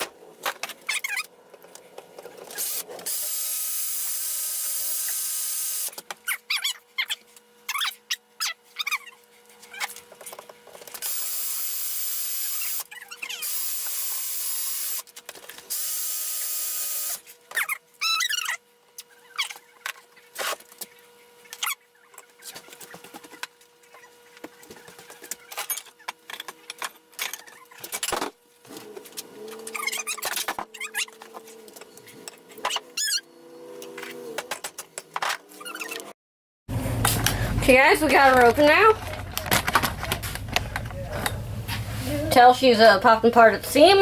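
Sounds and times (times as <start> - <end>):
power tool running: 2.5 - 6.0, 11.0 - 15.1, 15.7 - 17.2, 36.7 - 42.2
short squeaks: 29.5 - 31.4, 32.6 - 33.3, 35.5 - 36.1.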